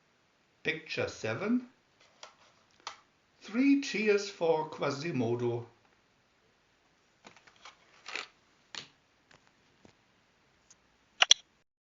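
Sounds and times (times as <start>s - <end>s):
soft rustles and taps: 7.2s - 8.1s, 8.7s - 10.0s
sharp clicks: 11.2s - 11.5s.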